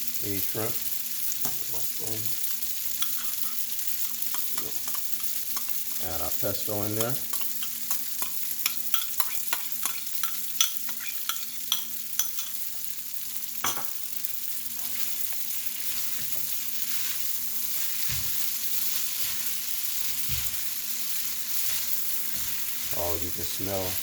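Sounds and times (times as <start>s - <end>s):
noodles sizzling in a pan: 0.0s - 24.0s
spoon scraping a pan: 1.4s - 12.8s.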